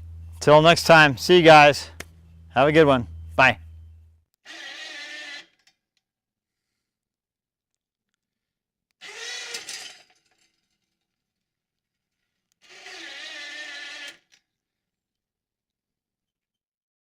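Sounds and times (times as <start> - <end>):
electric winch motor running: 0.0 - 5.3, 9.0 - 10.0.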